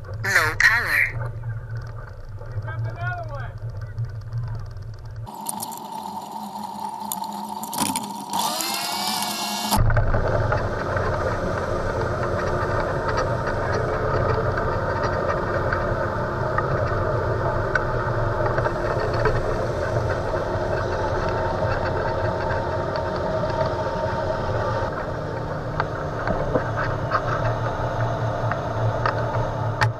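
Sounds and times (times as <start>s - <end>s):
watercraft engine running: 0.0s - 29.9s.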